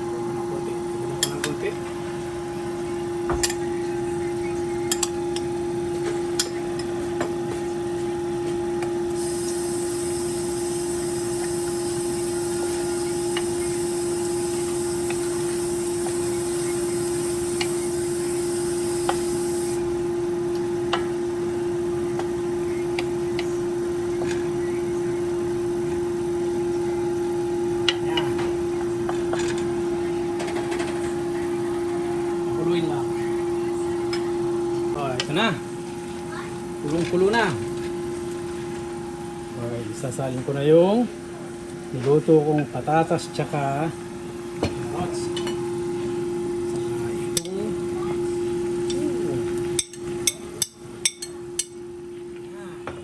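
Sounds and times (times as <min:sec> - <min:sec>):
steady hum: 0:00.0 - 0:53.0
higher hiss: 0:09.2 - 0:19.8.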